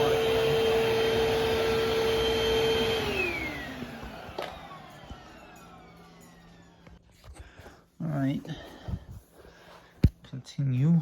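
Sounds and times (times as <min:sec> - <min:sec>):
vacuum cleaner motor whine: 0:00.0 - 0:07.4.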